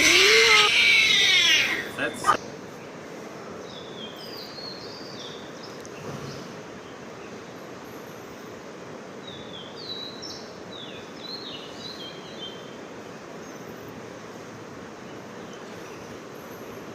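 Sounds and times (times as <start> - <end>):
outdoor background hiss: 0.0 - 16.9.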